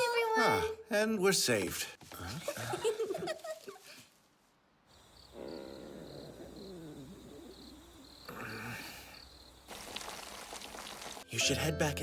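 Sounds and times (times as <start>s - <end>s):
crickets chirping: 4.9s - 11.2s.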